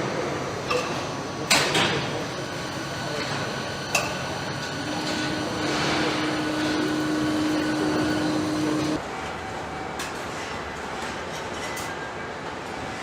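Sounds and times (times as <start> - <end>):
assembly line machinery din: 0.6 - 9.0
machine hum: 2.1 - 9.0.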